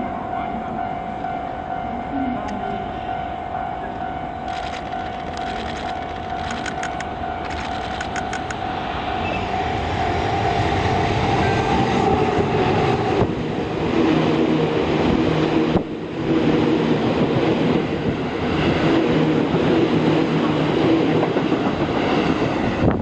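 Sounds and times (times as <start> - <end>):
electric locomotive motor whine: 0.0 - 23.0
train wheels clattering on rails: 4.5 - 8.6, 18.6 - 23.0.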